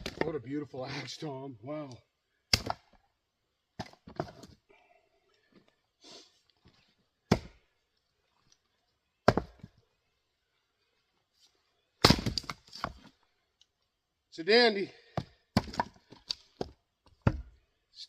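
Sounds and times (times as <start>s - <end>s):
axe chopping wood: 0.0s - 0.3s, 2.5s - 3.0s, 3.8s - 4.4s, 7.3s - 7.6s, 9.2s - 9.7s, 12.0s - 13.1s, 15.2s - 17.6s.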